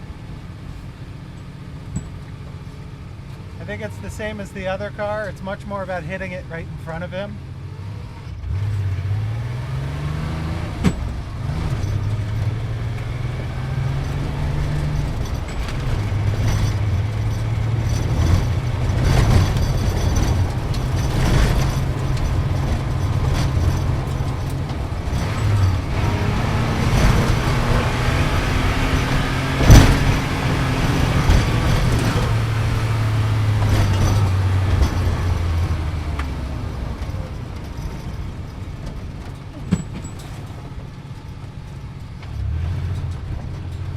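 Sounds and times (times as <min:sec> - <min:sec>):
sports car engine revving: 0:00.1 - 0:38.4
sharp knocks: 0:10.8 - 0:12.3, 0:14.0 - 0:35.8.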